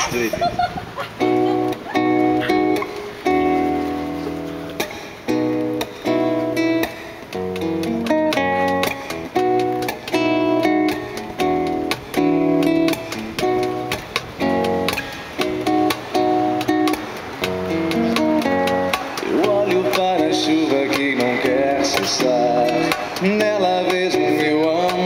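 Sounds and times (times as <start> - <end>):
acoustic guitar strumming: 1.2 - 25.0.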